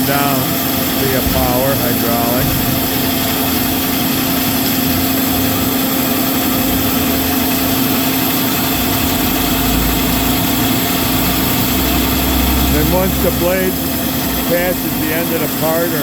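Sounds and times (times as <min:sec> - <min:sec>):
bandsaw droning: 0:00.0 - 0:16.0.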